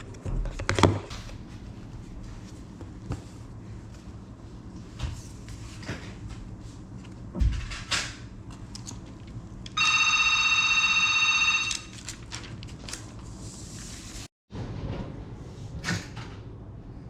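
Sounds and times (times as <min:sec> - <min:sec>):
high electronic ringing tone: 0:09.8 - 0:12.0.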